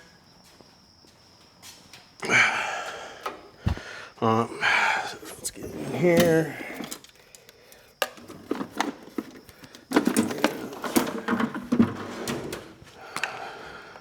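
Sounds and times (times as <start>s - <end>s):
objects knocking and clattering: 8.0s - 12.6s.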